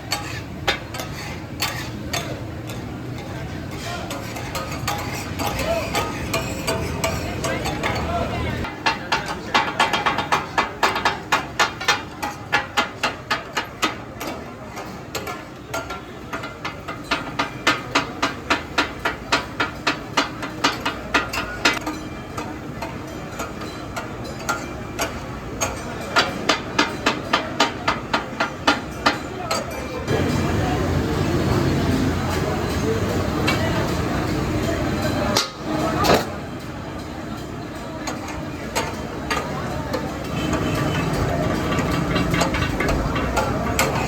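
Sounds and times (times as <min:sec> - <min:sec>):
metal spatulas clanging on griddle: 0:00.0 - 0:30.6, 0:31.7 - 0:44.0.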